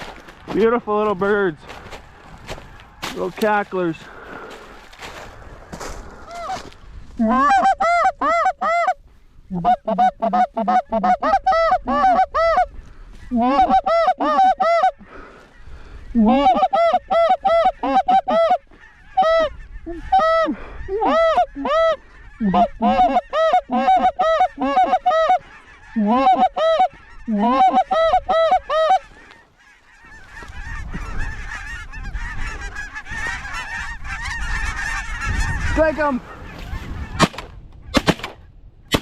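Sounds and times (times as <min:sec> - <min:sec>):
low wind rumble: 0:00.0 - 0:13.4, 0:14.9 - 0:16.3, 0:18.7 - 0:23.7, 0:30.0 - 0:39.0
geese honking: 0:00.0 - 0:39.0.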